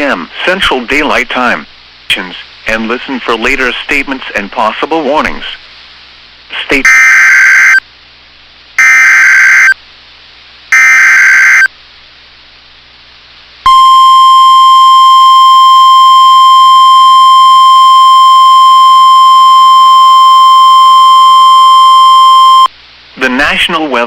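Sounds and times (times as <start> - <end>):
electronic data bursts: 6.8 - 7.8, 8.8 - 9.8, 10.7 - 11.7
steady warning alarm tone: 6.8 - 7.8, 8.8 - 9.8, 10.7 - 11.7, 13.7 - 22.7.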